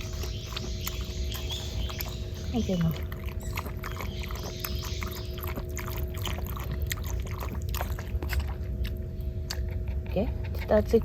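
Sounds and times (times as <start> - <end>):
dog lapping water: 0.0 - 11.0
low steady rumble: 0.0 - 11.0.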